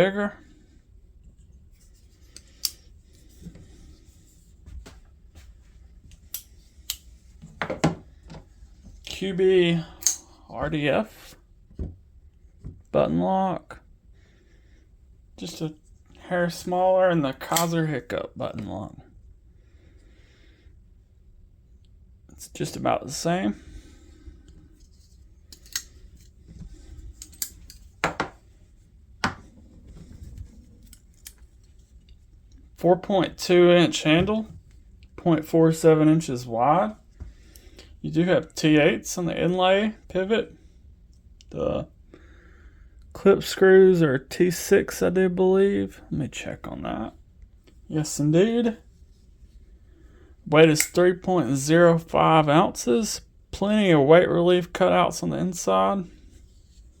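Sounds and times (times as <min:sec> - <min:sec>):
soft handling noise: 0:00.0 - 0:13.0, 0:22.7 - 0:39.6, 0:54.7 - 0:57.0.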